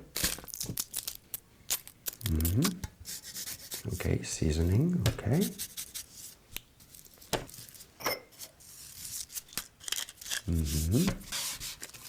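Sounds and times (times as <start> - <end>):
man humming mm: 2.2 - 2.9, 10.5 - 11.2.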